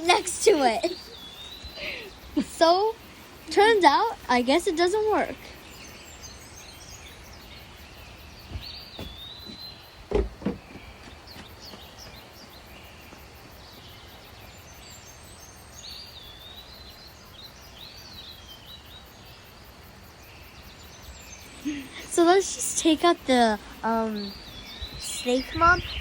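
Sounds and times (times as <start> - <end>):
outdoor background noise: 0.0 - 26.0
small birds chirping: 0.0 - 26.0
dull knocks: 8.4 - 12.2.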